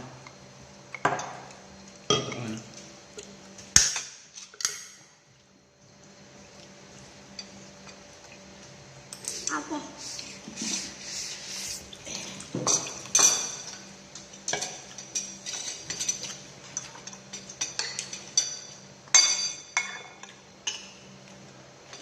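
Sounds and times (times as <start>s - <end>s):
utensils clinking against dishes: 1.0s - 2.7s, 3.8s - 5.1s, 9.1s - 9.6s, 12.1s - 21.1s.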